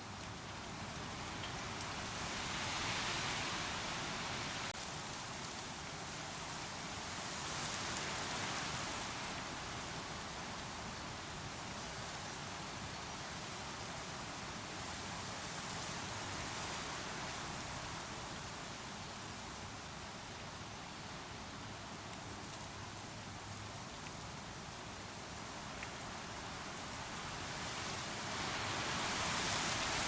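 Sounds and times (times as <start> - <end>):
rushing water: 25.0 - 30.0.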